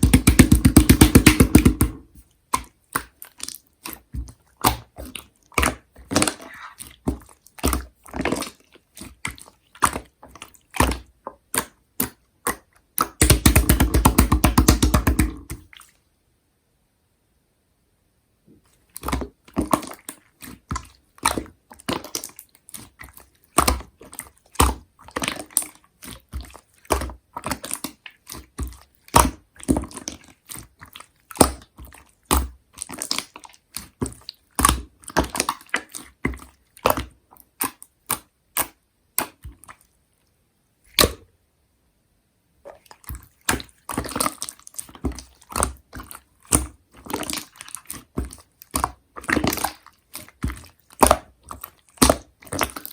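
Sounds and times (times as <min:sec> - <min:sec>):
slime squished by hand: 0:00.0 - 0:16.0, 0:18.9 - 0:39.9, 0:40.9 - 0:41.3, 0:42.6 - 0:52.9.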